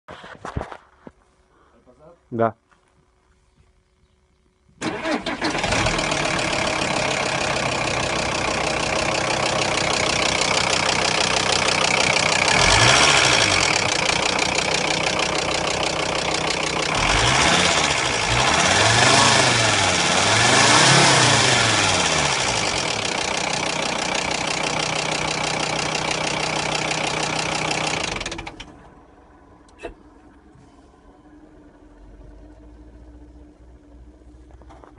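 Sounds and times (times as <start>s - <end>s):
van engine knocking and revving: 5.6s - 28.8s.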